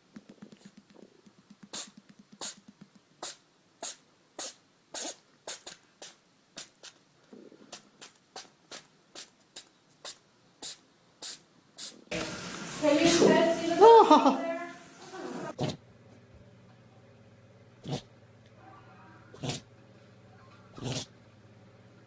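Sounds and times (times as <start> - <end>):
animal sneezing: 1.6 - 7.0, 7.6 - 12.1, 15.0 - 15.8, 19.3 - 19.7.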